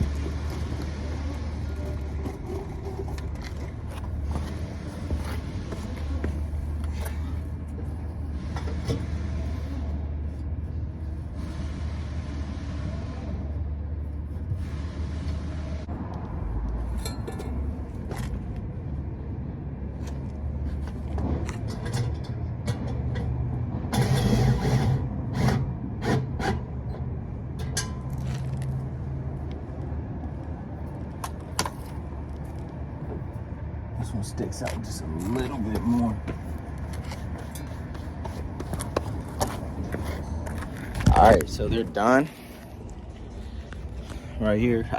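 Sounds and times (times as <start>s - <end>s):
metal tools clinking and knocking: 17.0s - 17.6s.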